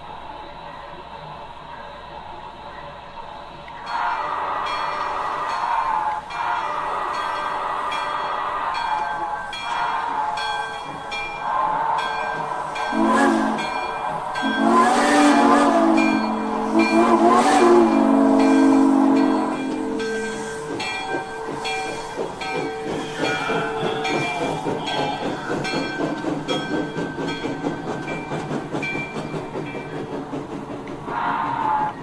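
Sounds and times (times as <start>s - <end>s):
steam exhaust chuffing with hiss: 0.0s - 32.0s
chime steam whistle: 3.8s - 30.2s.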